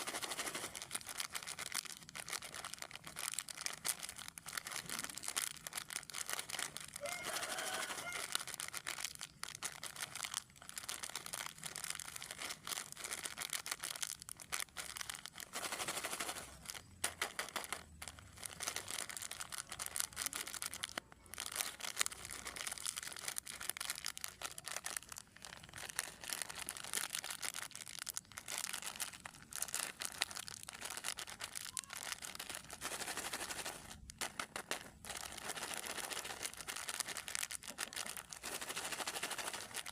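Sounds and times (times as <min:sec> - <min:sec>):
plastic packaging crinkling: 0:00.0 - 0:39.9
plastic packaging tearing: 0:00.0 - 0:39.9.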